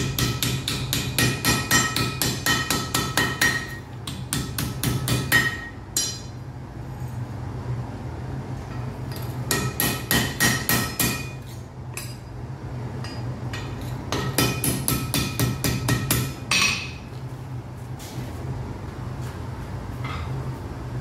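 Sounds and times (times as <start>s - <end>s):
hammer striking iron on anvil: 0.0s - 6.4s, 8.7s - 12.3s, 13.0s - 17.1s
steady low hum: 0.0s - 21.0s.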